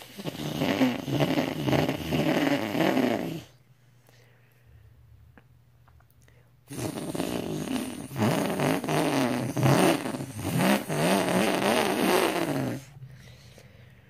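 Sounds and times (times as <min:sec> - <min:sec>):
person imitating car engine revving: 0:06.7 - 0:13.0.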